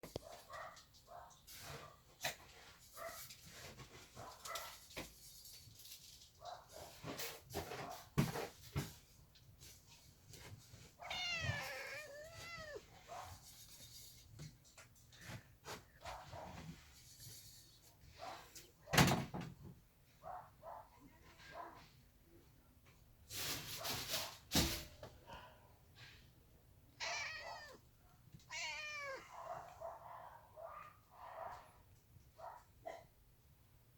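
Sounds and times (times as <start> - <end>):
rustling: 0.2 - 18.6
cat meowing: 11.0 - 13.0, 27.0 - 29.7.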